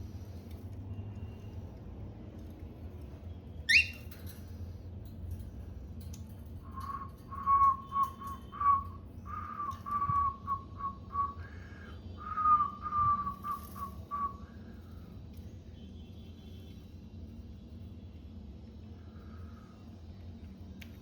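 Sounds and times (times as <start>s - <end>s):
cockatiel whistling a tune: 3.7s - 4.0s, 6.8s - 11.4s, 12.2s - 14.4s.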